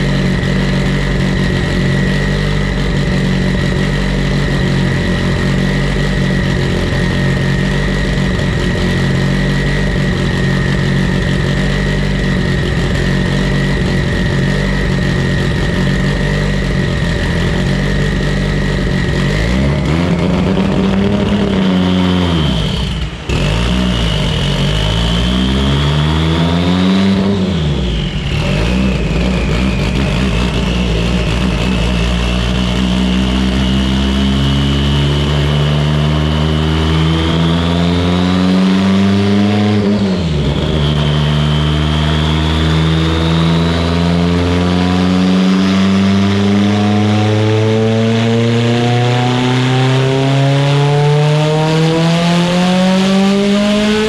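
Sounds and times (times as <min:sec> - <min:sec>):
car engine revving on a dyno: 0:00.0 - 0:54.0.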